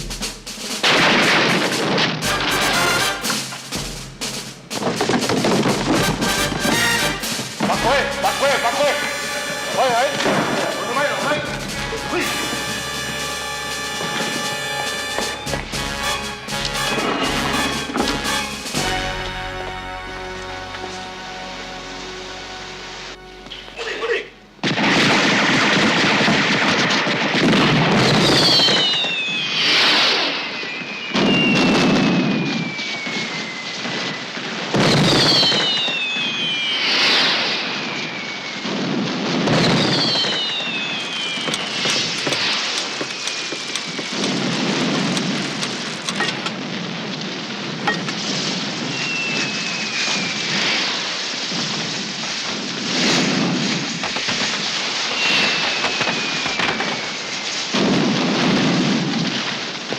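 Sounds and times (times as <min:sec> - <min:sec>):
firework bangs: 0:00.0 - 0:59.9
firework crackling: 0:00.0 - 0:59.9
firework whistles falling in pitch: 0:06.3 - 0:23.9, 0:27.9 - 0:45.2, 0:48.0 - 0:52.6, 0:53.2 - 0:58.4.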